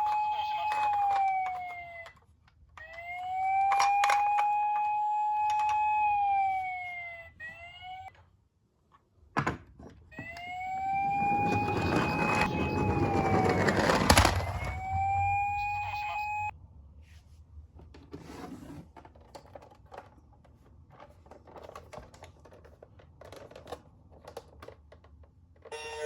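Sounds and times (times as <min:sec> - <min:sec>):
toy electronic siren wailing: 0:00.0 - 0:02.2, 0:02.8 - 0:08.2, 0:10.2 - 0:16.5, 0:25.7 - 0:26.0.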